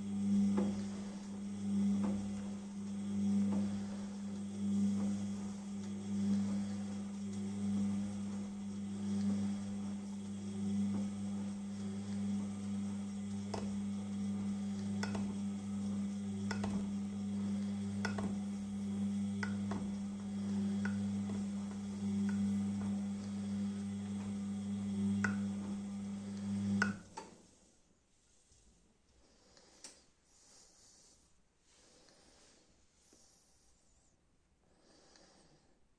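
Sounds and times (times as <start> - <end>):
washing machine motor hum: 0.0 - 27.3.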